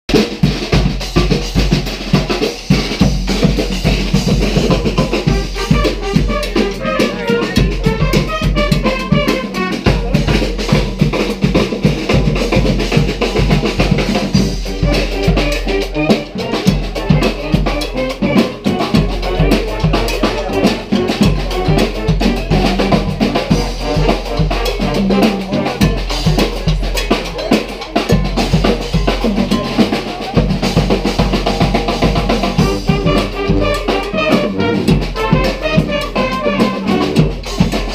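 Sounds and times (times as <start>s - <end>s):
bass drum and snare beat: 0.1s - 37.9s
marching band playing: 0.1s - 37.9s.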